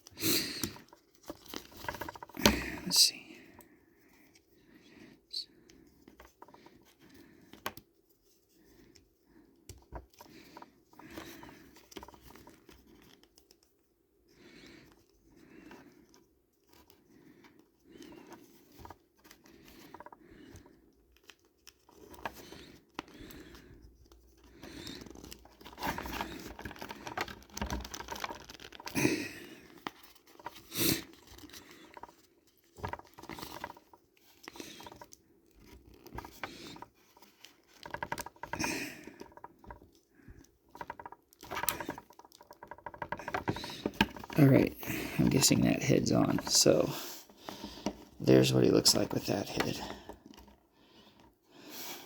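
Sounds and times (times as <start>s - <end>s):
plastic clicks and creaks: 0.5s - 3.7s, 5.7s - 7.8s, 9.7s - 13.7s, 15.7s - 29.0s, 29.6s - 51.4s
handling rustle: 23.8s - 29.0s, 29.6s - 40.0s, 40.6s - 50.7s.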